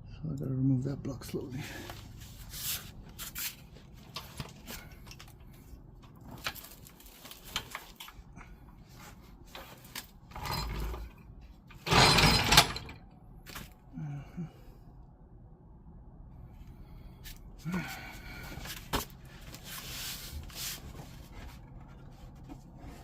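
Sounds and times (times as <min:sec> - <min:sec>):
wood scraping clatter: 0:08.9 - 0:13.0, 0:18.8 - 0:23.0.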